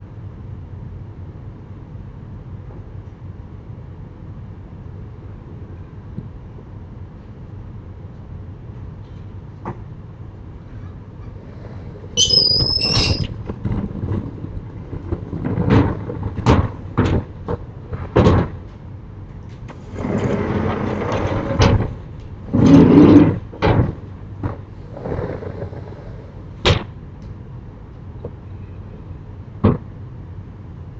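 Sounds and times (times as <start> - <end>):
shutter rumbling slide: 11.4 - 16.5, 19.5 - 26.3
high squeal: 12.2 - 13.4.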